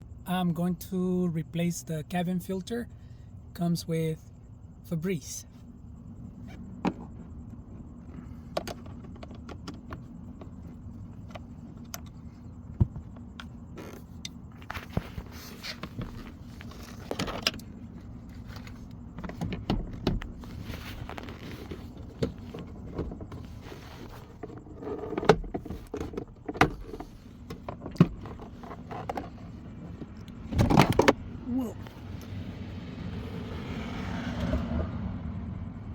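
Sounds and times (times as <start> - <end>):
steady low hum: 0.0 - 35.9
rustling and scraping: 5.5 - 31.2.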